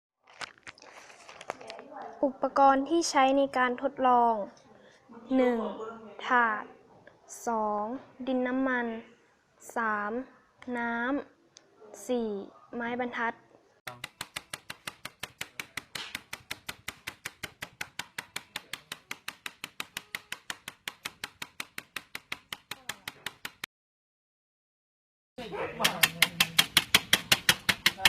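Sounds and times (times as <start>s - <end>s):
rapid even tapping: 13.9s - 23.7s, 25.8s - 28.0s.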